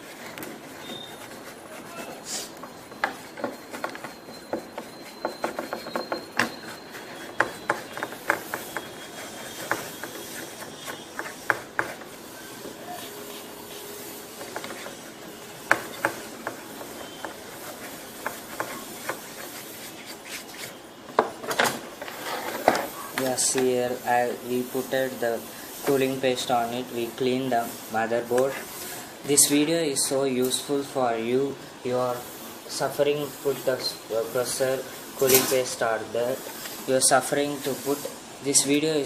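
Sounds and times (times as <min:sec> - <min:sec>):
hands rubbing laptop parts: 0:00.0 - 0:20.8.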